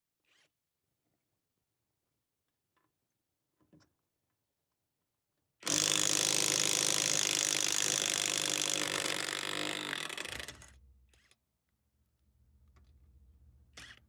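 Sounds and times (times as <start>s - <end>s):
impact wrench running: 5.6s - 10.8s.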